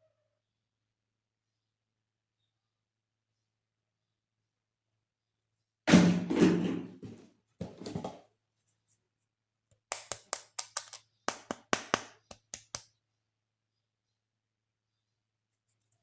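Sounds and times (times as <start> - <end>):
plastic toy thunk: 5.9 - 8.0.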